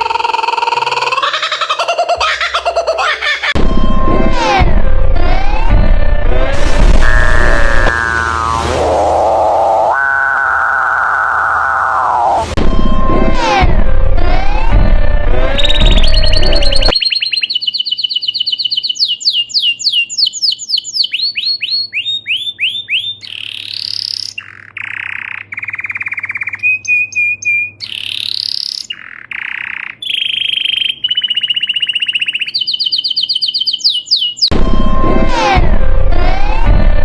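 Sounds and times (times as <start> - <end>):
music: 3.6 - 7.9, 34.6 - 37.0
varied bird calls: 15.6 - 34.5.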